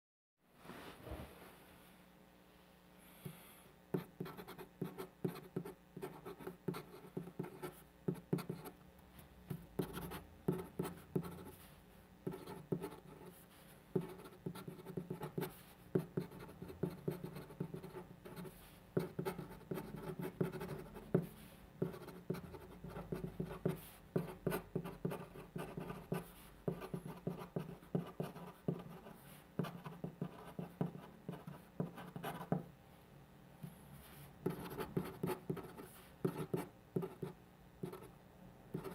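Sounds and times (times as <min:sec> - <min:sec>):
pen writing on paper: 0:04.0 - 0:08.7, 0:09.5 - 0:11.6, 0:14.0 - 0:32.6, 0:34.4 - 0:38.1.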